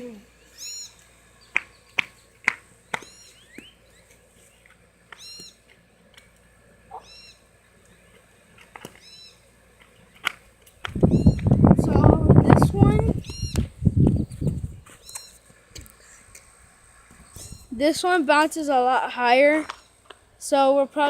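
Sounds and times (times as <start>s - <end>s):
bird chirping: 0.4s - 5.6s, 6.9s - 8.2s, 9.0s - 9.4s, 11.0s - 11.6s, 13.1s - 15.4s, 17.2s - 17.8s.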